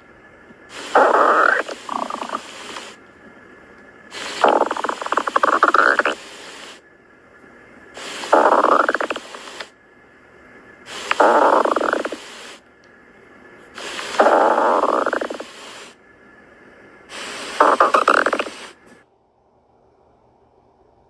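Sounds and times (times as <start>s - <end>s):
stomach growling: 0.7s - 3.0s, 4.1s - 6.4s, 8.0s - 9.7s, 10.9s - 12.6s, 13.8s - 16.0s, 17.1s - 18.8s.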